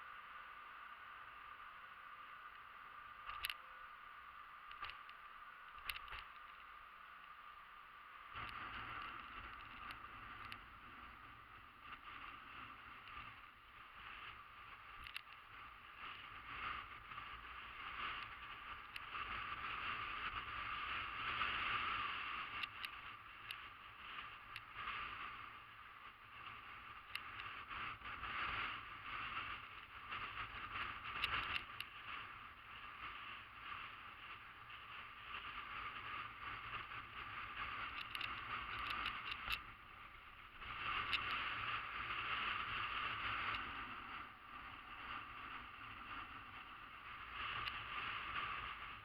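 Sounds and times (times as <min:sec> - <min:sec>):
sharp clicks and knocks: 0:04.7 - 0:05.2, 0:05.8 - 0:06.6, 0:37.9 - 0:39.7.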